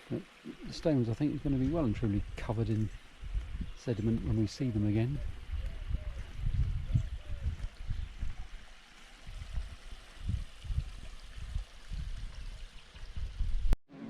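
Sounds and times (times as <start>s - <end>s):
low rumbling: 0.1s - 8.7s.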